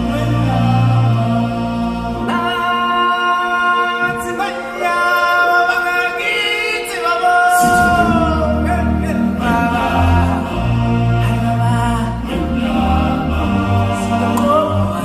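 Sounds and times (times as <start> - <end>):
choir singing held notes: 0.0 - 15.0
deep bass notes: 7.6 - 15.0.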